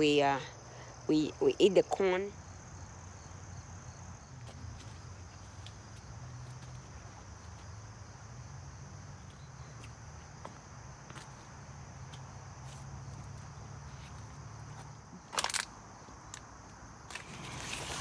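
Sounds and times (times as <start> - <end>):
insect chirring: 0.0 - 18.0
light clicks and rustles: 13.9 - 16.5.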